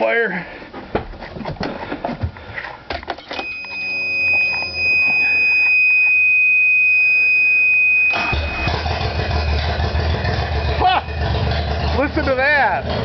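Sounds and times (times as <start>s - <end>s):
clicks: 2.9s - 6.3s
car warning buzzer: 3.4s - 9.1s.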